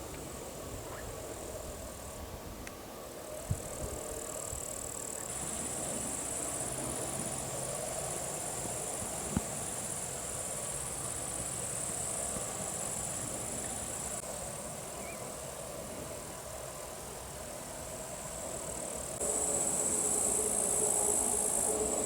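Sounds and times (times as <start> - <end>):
crickets chirring: 3.2 - 22.0.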